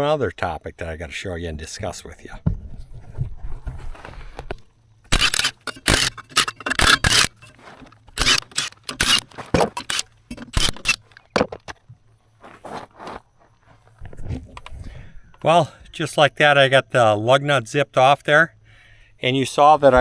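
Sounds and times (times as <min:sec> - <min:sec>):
impact wrench bursts: 0:05.1 - 0:11.1.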